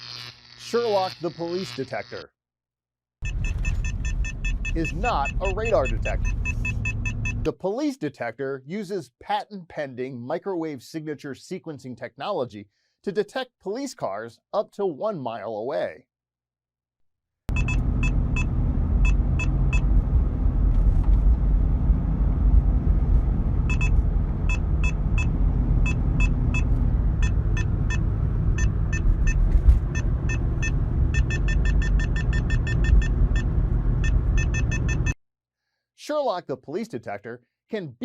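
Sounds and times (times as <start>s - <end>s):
electronic alert beeps: 3.2s - 7.5s, 17.5s - 19.9s, 23.7s - 35.2s
lower beep tone: 3.2s - 7.5s, 17.5s - 19.9s, 23.7s - 35.2s
road rumble inside car: 3.2s - 7.5s, 17.5s - 35.2s.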